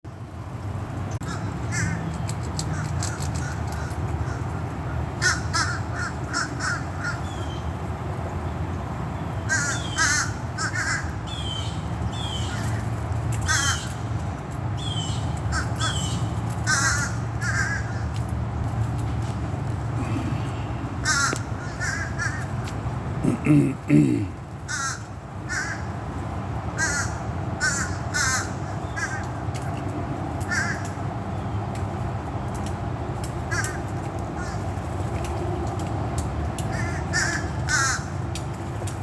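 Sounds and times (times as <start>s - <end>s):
birds calling: 1.2s - 7.8s, 8.4s - 18.6s, 19.3s - 26.0s, 26.8s - 29.8s, 33.5s - 34.8s, 36.6s - 38.3s.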